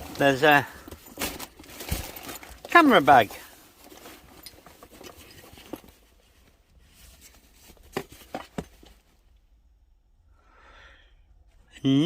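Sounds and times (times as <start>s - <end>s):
bag rustling: 0.0s - 9.1s.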